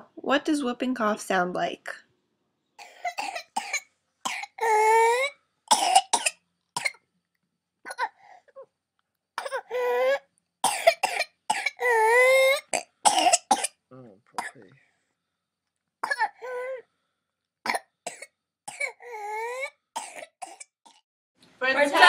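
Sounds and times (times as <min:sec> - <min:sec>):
rapid coughing: 0:02.8 - 0:07.0, 0:09.4 - 0:13.8, 0:16.0 - 0:16.8, 0:17.7 - 0:21.0.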